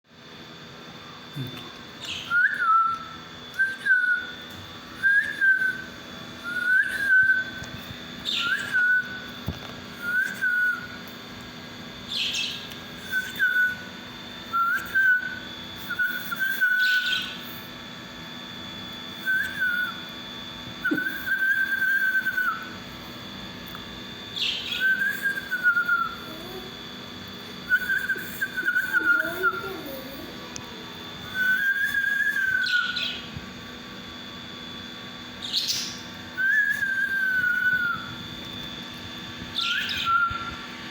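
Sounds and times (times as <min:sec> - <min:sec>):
parakeets whistling: 0:02.0 - 0:04.4, 0:08.2 - 0:11.0, 0:12.0 - 0:17.6, 0:24.2 - 0:33.4, 0:35.3 - 0:38.4, 0:39.4 - 0:40.8.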